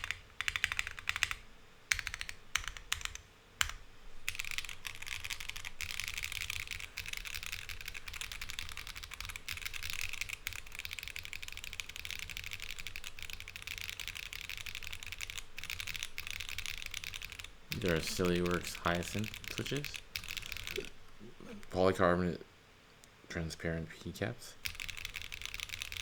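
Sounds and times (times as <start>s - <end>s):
fast mechanical keyboard typing: 0.0s - 21.0s, 24.6s - 26.0s.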